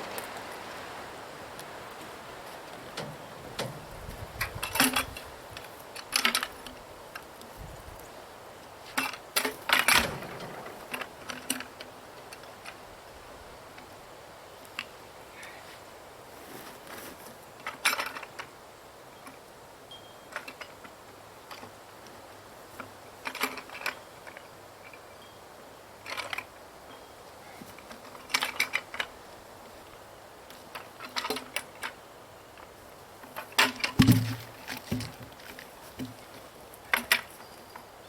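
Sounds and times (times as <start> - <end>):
heavy thump: 9.9 - 11.3, 34.0 - 35.3.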